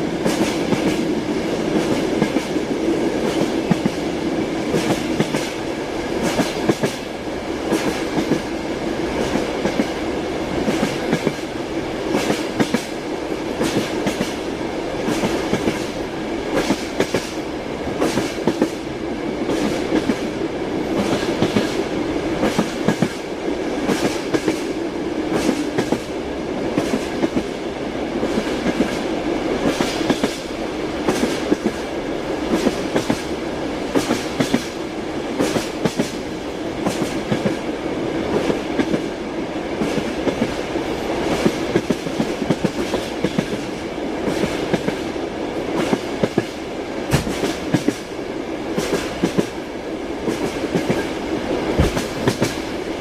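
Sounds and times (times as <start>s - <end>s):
train carriage rumbling: 0.0s - 53.0s
train wheels clacking over rail joints: 4.7s - 5.6s, 6.2s - 8.5s, 12.1s - 13.0s, 13.6s - 17.4s, 18.0s - 18.8s, 20.9s - 21.8s, 22.4s - 23.2s, 23.8s - 26.1s, 29.6s - 31.8s, 32.5s - 33.3s, 33.9s - 34.8s, 35.4s - 36.2s, 36.8s - 37.6s, 41.2s - 45.0s, 45.8s - 48.1s, 51.7s - 52.7s.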